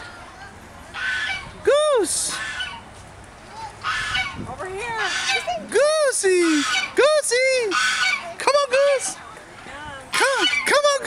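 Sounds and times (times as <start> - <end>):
goose honking: 0.9 - 1.5, 2.2 - 2.8, 3.8 - 9.2, 10.1 - 11.0.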